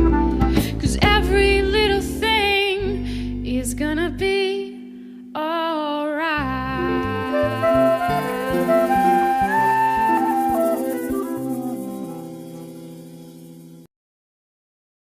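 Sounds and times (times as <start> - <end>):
guitar and bass: 0.0 - 4.4, 6.4 - 13.8
wavering lead melody: 6.3 - 13.8.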